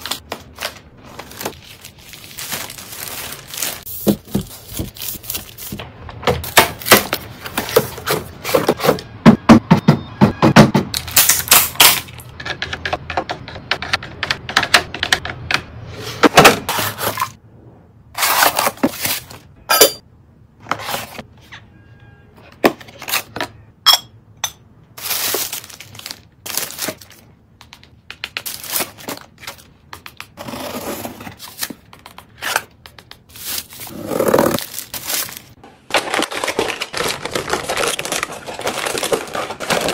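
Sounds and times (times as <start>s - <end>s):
packaging rustling: 0.0s - 5.8s, 25.0s - 39.9s.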